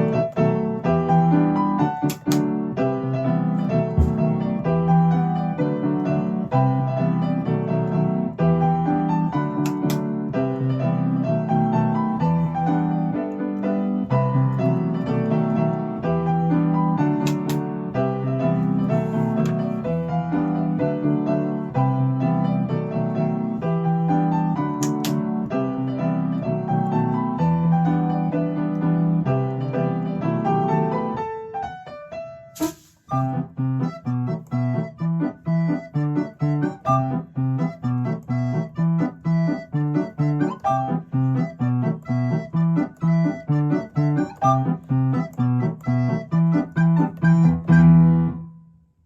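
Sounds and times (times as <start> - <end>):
piano chords: 0.0 - 48.9
click: 2.0 - 2.6, 9.6 - 10.1, 17.2 - 17.7, 19.0 - 19.8, 24.8 - 25.3, 33.8 - 36.8, 37.6 - 47.8.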